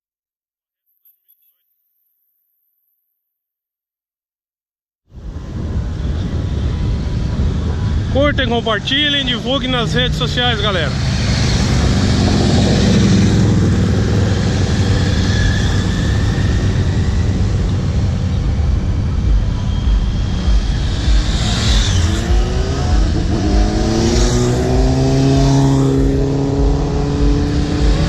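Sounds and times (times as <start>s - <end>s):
motorcycle engines rumbling: 5.2s - 28.0s
motorcycle engine accelerating: 10.9s - 28.0s.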